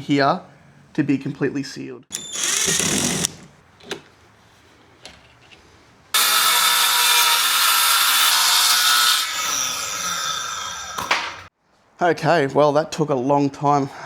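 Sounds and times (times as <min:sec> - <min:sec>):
power saw cutting wood: 0:02.1 - 0:03.4, 0:06.2 - 0:11.4.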